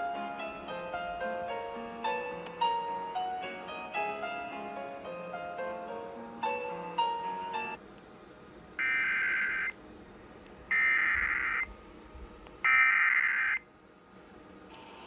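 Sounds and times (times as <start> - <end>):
buzzy digital data tones: 8.8 - 9.7, 10.7 - 11.7.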